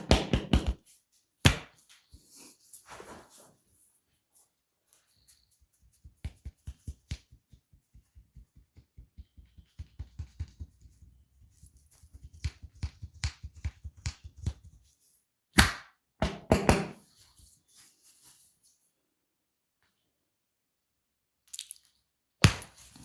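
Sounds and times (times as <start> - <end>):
hands slapping skin: 5.9 - 10.8, 12.1 - 14.7
hands tapping on skin: 5.9 - 10.9, 12.2 - 14.7.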